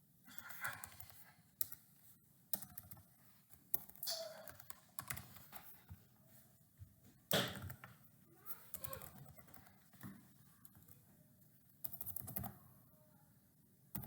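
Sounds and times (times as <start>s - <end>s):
keyboard typing: 0.4s - 1.8s, 2.5s - 3.0s, 3.7s - 5.8s, 7.3s - 7.9s, 8.6s - 11.0s, 11.8s - 12.6s.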